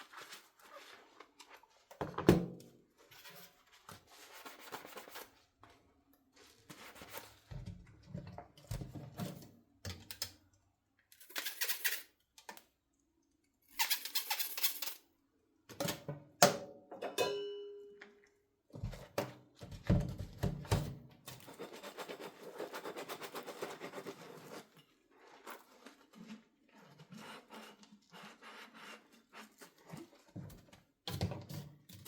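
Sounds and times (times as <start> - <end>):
dish clinking: 17.0 - 18.0.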